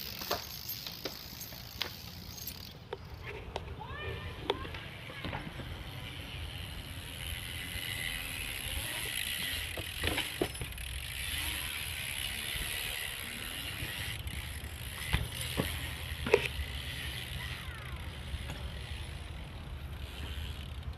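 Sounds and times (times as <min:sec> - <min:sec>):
bike tyres rolling on hard ground: 0:00.0 - 0:20.9
sharp knocks from bike: 0:09.8 - 0:10.8, 0:15.0 - 0:16.6.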